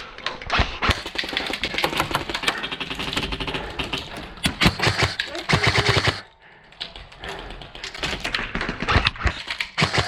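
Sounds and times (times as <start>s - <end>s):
airsoft guns firing full-auto: 0.9s - 6.3s, 9.6s - 10.0s.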